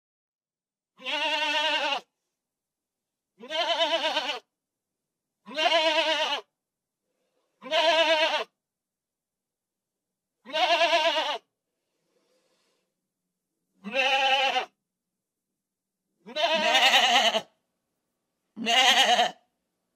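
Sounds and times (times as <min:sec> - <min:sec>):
goat bleating: 0:01.0 - 0:02.1, 0:03.4 - 0:04.5, 0:05.4 - 0:06.5, 0:07.6 - 0:08.6, 0:10.4 - 0:11.5, 0:13.8 - 0:14.8, 0:16.2 - 0:17.5, 0:18.6 - 0:19.4.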